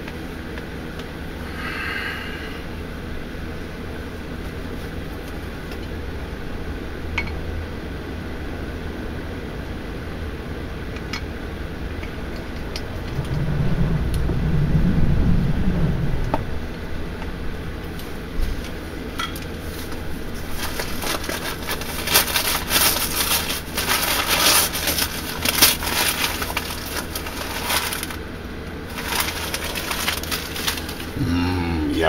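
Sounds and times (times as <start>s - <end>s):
paper and cardboard crinkling: 19.6s - 28.3s, 28.9s - 31.2s.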